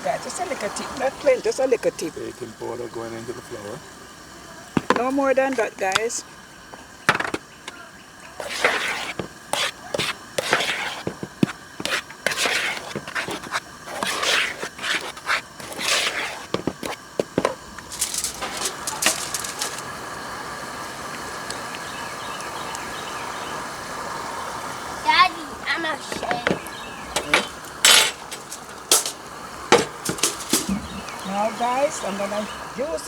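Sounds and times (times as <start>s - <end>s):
steady even hiss: 0.0s - 33.0s
utensils scraping and knocking bowls: 4.8s - 6.2s, 8.4s - 19.9s, 26.0s - 31.2s.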